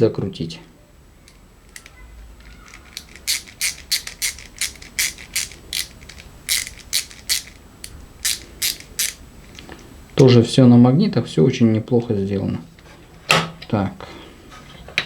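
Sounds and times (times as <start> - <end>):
ratcheting screwdriver clicking: 1.3 - 9.7.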